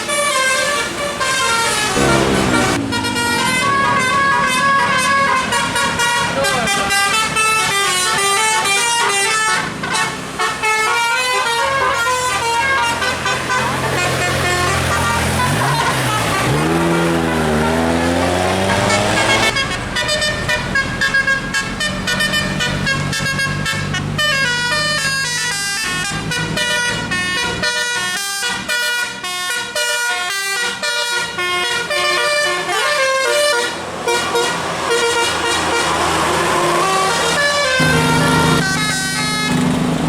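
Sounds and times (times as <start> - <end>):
bus musical air horn: 0.0 - 40.0
low engine hum: 1.7 - 5.5, 12.5 - 27.4.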